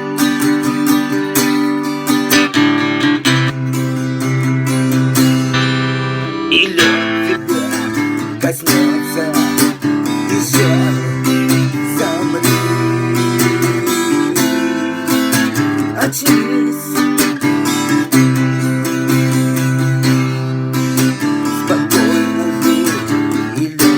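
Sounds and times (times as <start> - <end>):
acoustic guitar strumming chords: 0.0 - 23.9.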